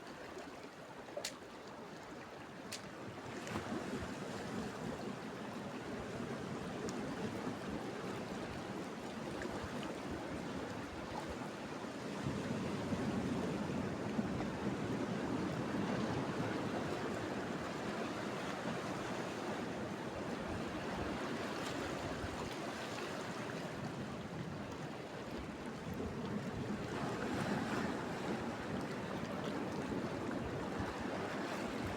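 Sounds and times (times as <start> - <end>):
sea surf washing on shore: 11.8 - 31.9.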